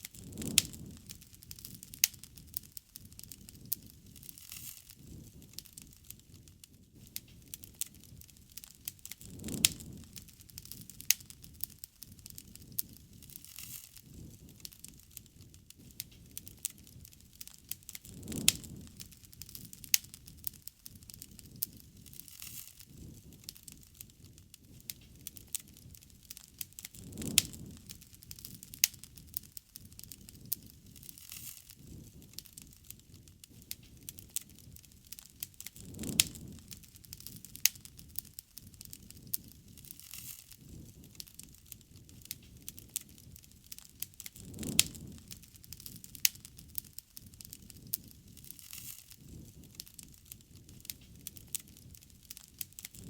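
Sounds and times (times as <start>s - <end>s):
campfire crackling and popping: 0.0s - 53.0s.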